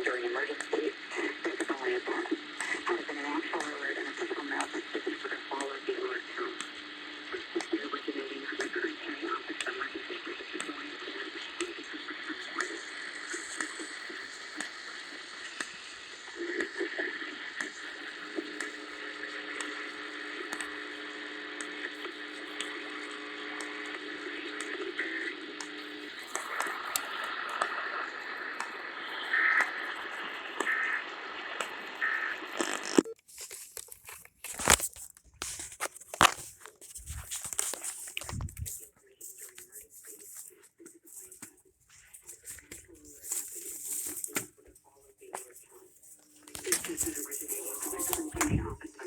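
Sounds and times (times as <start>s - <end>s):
radio static hiss: 0.0s - 49.0s
clicks and rustling handling noises: 32.5s - 49.0s.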